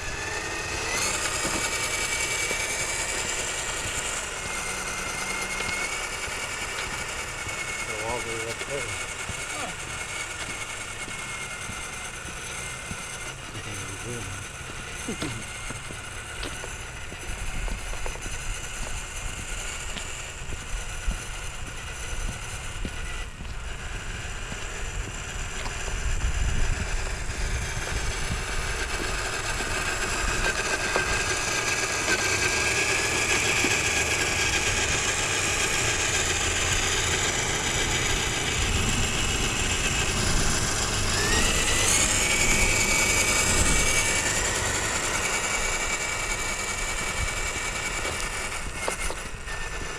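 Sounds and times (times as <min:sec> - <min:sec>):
toy truck electric motor whining: 0:00.0 - 0:49.9.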